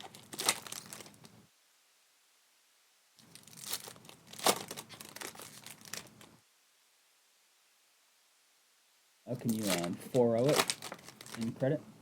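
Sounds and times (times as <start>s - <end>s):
wrapper crinkling and tearing: 0.0s - 1.3s, 3.2s - 6.3s, 9.4s - 11.7s.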